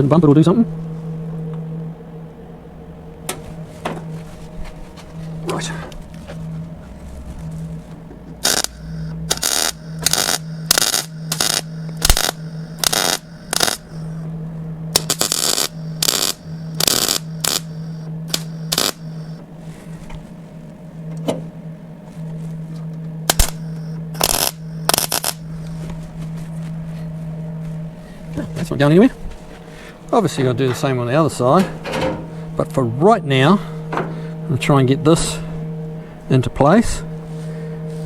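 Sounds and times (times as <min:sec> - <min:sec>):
welder low hum: 0:00.0 - 0:38.0
welding arc crackle bursts: 0:08.4 - 0:14.2, 0:14.9 - 0:19.4, 0:23.3 - 0:25.7.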